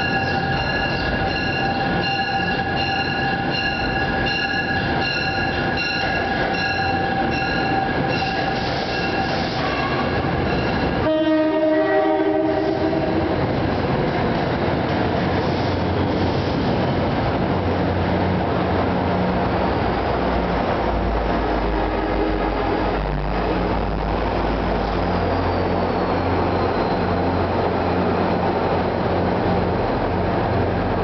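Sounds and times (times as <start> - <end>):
diesel locomotive rumble: 0.0 - 31.0
train wheels on rails: 0.0 - 31.0
train horn blast: 9.3 - 10.3, 11.0 - 13.4, 21.7 - 22.8.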